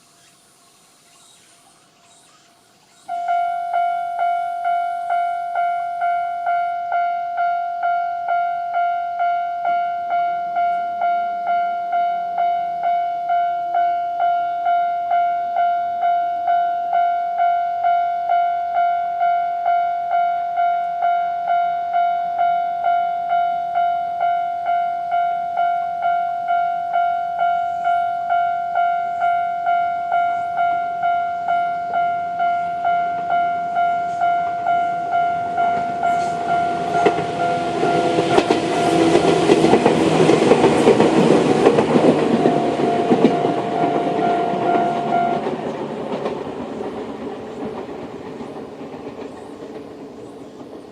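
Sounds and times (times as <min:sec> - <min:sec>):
level crossing alarm ringing: 0:03.0 - 0:47.2
train wheels clattering: 0:32.4 - 0:50.9.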